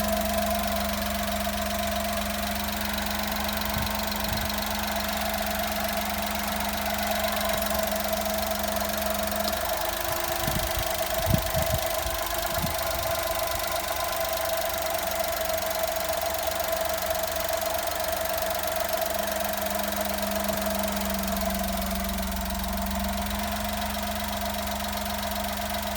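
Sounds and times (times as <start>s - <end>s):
low droning alternator hum: 0.0s - 14.2s
engine idling: 0.0s - 25.9s.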